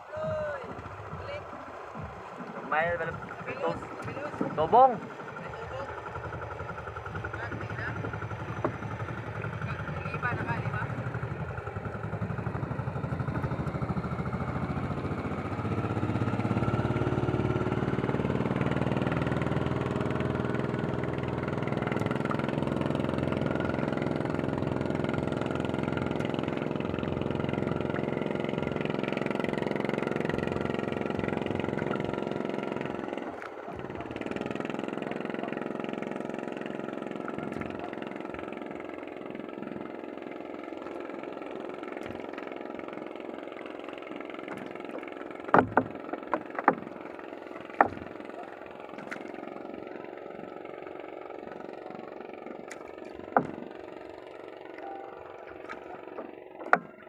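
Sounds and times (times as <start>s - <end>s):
small engine running: 0.2s - 57.0s.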